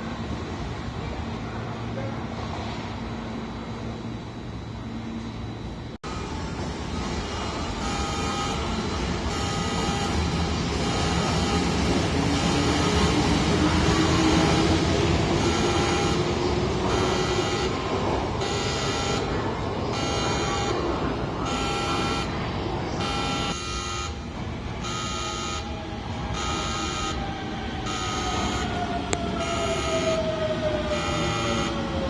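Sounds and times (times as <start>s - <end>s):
electric train motor whine: 4.8s - 20.8s
pulsing electronic departure tone: 13.9s - 19.3s.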